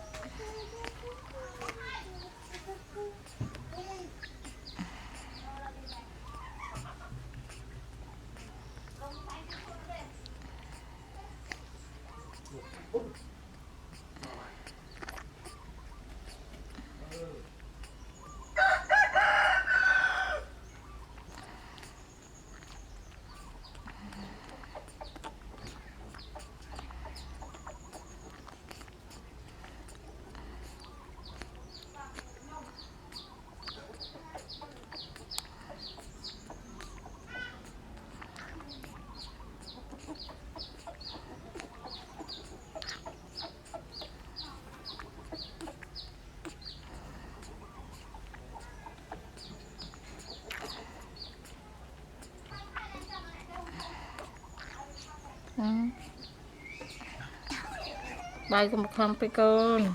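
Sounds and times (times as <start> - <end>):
chick peeping: 0.0 - 59.9
rooster crowing: 18.6 - 20.6.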